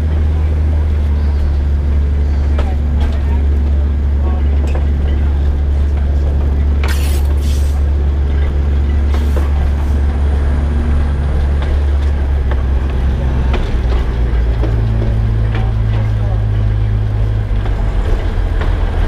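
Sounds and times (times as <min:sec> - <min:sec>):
diesel locomotive engine drone: 0:00.0 - 0:19.0.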